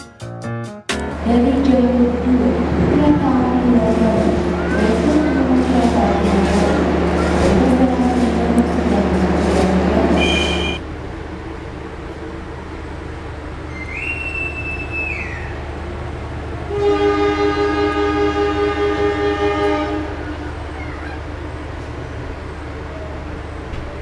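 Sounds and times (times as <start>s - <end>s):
diesel locomotive horn: 1.1s - 10.9s, 16.6s - 21.3s
high whistle blown: 10.2s - 10.8s, 13.7s - 15.6s.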